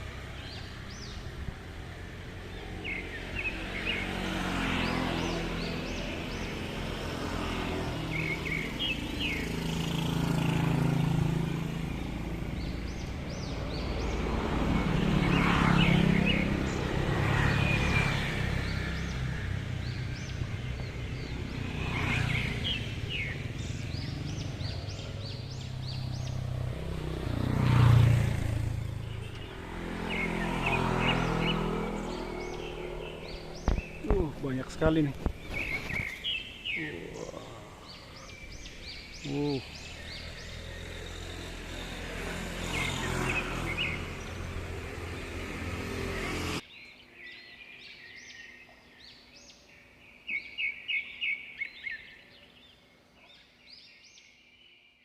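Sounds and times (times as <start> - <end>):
vehicles passing on road: 0.0 - 54.6
high bird chirps: 29.0 - 41.8.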